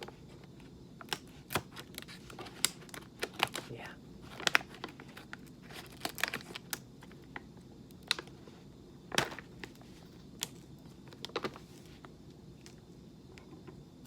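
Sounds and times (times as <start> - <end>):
coffee bag crinkling: 1.1 - 8.3.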